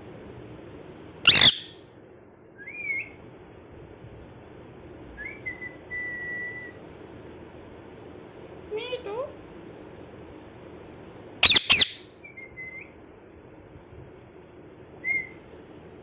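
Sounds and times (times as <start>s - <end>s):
parrot screaming: 1.3s - 1.8s, 11.4s - 12.1s
parrot whistling: 1.3s - 1.8s, 11.4s - 12.9s, 15.0s - 15.4s.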